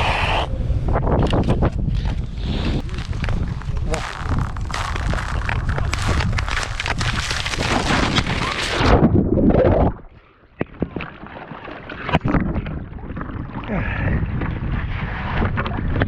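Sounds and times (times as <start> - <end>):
water splashing: 2.8 - 14.5
ice crashing: 3.0 - 9.0.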